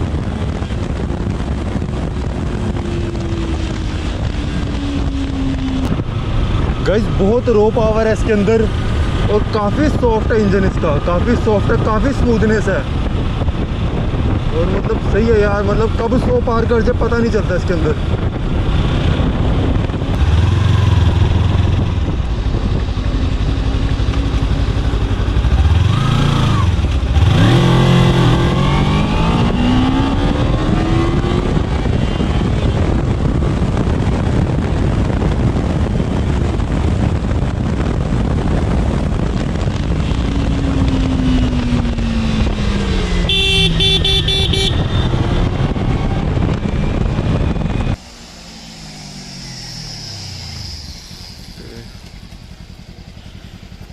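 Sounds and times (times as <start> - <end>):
motorcycle engine accelerating: 0.0 - 53.9
vehicle horn: 43.2 - 45.2.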